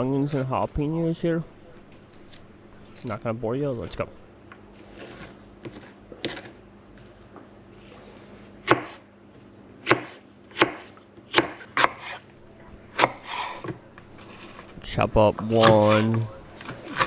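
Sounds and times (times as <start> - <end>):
knife cutting onion: 4.9 - 6.6, 8.6 - 9.1, 9.8 - 12.3, 12.9 - 14.8, 15.4 - 17.0.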